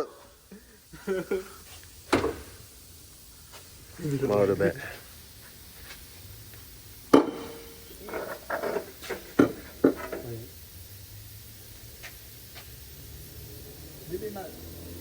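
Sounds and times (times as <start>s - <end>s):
metal clanks and knocks: 7.2s - 10.2s.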